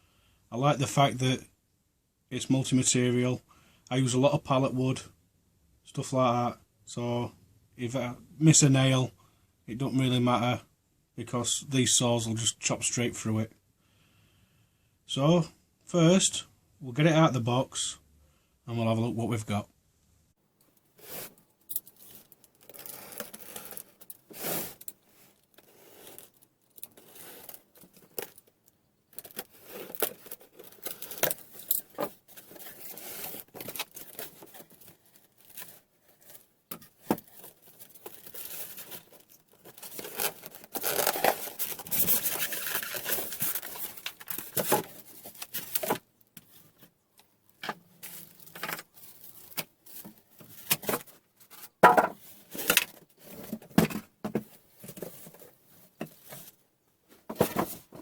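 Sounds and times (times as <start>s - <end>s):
knocks and scrapes of handling: 20.6s - 58.0s
packaging tearing and rustling: 21.0s - 46.0s.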